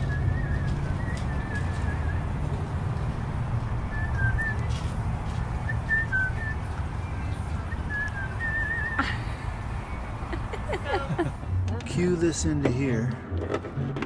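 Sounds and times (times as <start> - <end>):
person whistling a tune: 0.0 - 2.3, 3.9 - 4.8, 5.6 - 6.6, 7.6 - 9.1.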